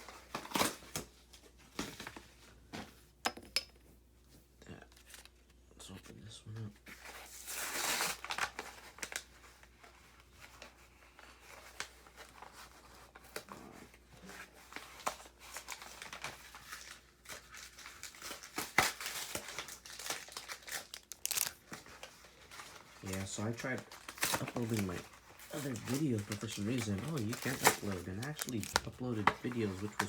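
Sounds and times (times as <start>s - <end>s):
foil wrapper ripping: 7.4s - 9.4s, 14.9s - 30.0s
wrapper crinkling: 7.4s - 10.4s, 14.2s - 30.0s
cards clicking: 20.9s - 21.6s, 26.3s - 30.0s.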